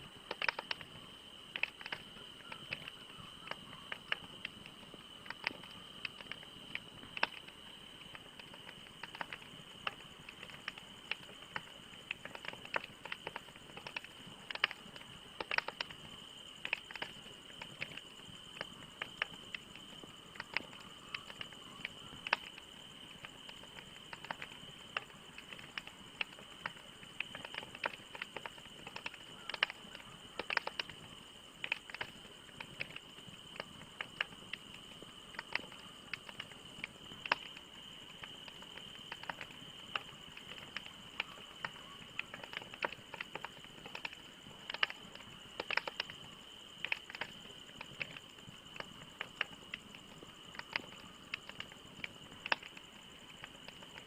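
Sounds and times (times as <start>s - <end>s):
steady high-pitched whine: 0.0s - 42.4s
wood fire crackling: 0.1s - 54.0s.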